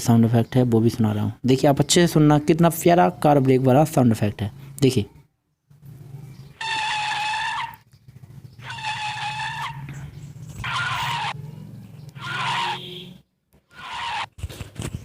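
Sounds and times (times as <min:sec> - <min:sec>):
tyres screeching: 0:06.3 - 0:14.4.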